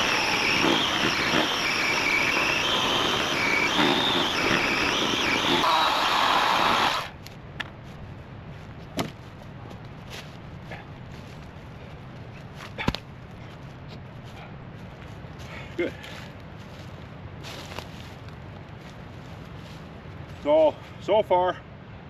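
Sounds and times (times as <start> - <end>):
electric chainsaw cutting log: 0.0 - 7.2.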